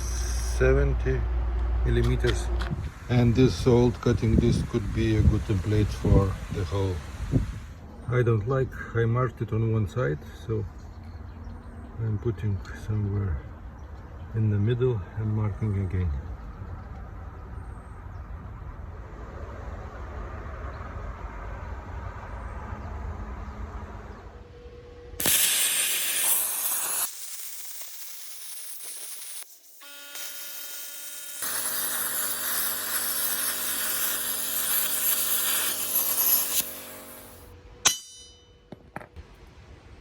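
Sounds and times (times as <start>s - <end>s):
power tool cutting: 25.2s - 37.5s.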